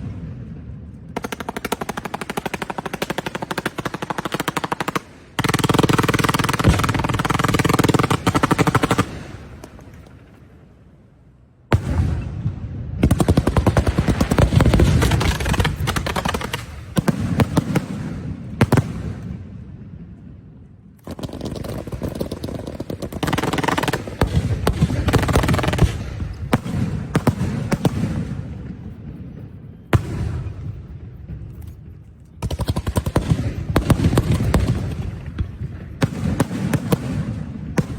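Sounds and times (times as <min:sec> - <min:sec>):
firework bangs: 0:33.2 - 0:37.9.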